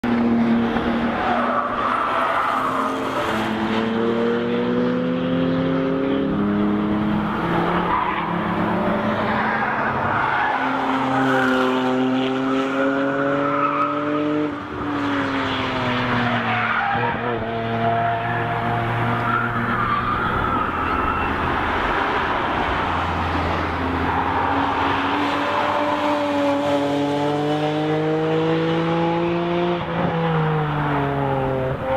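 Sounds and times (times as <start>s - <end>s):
race cars passing: 0.0s - 31.9s
tyre squeal: 16.4s - 21.8s.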